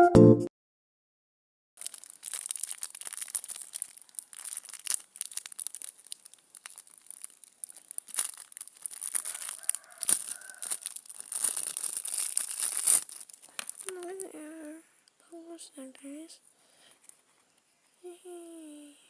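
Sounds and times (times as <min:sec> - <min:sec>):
packaging crinkling and rustling: 0:01.8 - 0:14.7.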